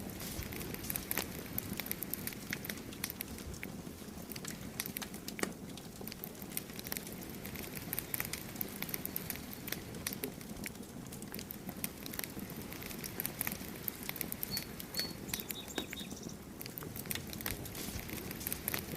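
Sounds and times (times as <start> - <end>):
campfire crackling and popping: 0.0 - 18.9
low rush of flames: 0.0 - 18.9
bird chirping: 14.5 - 16.4.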